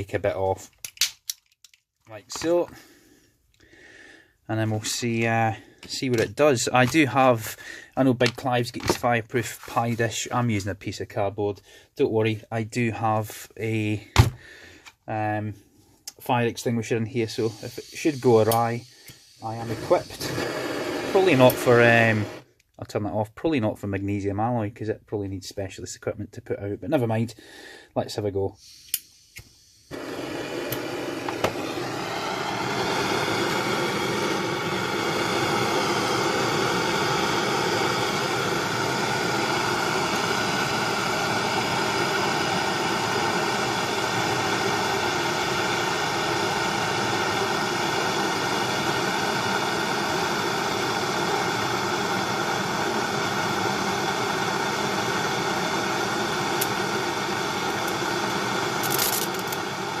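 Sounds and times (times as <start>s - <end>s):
blowtorch flame hissing: 17.0s - 22.4s, 28.6s - 60.0s.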